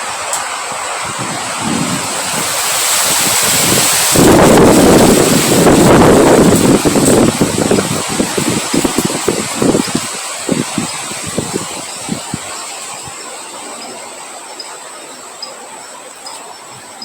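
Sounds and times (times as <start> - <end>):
high insect drone: 0.0 - 17.0
rain hissing: 0.0 - 17.0
wind gusts: 0.0 - 17.0
faint chirps: 11.9 - 17.0.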